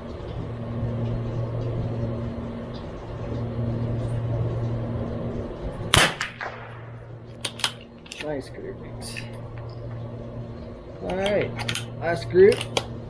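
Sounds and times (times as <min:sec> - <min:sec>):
continuous rumble: 0:00.0 - 0:13.0
low mechanical hum: 0:00.0 - 0:13.0
rifle shots: 0:05.9 - 0:07.8.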